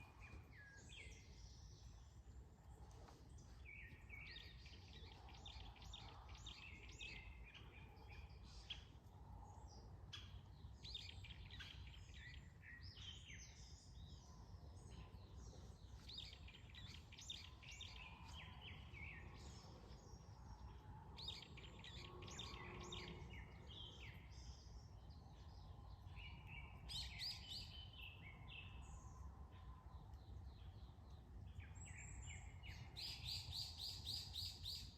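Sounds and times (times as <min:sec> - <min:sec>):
songbirds chirping and trilling: 0:00.0 - 0:34.9.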